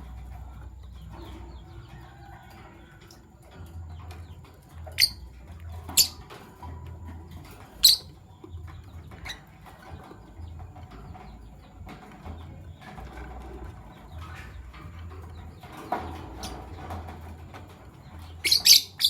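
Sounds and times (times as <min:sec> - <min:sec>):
lovebirds chirping shrilly: 0:07.8 - 0:08.2, 0:18.2 - 0:19.0.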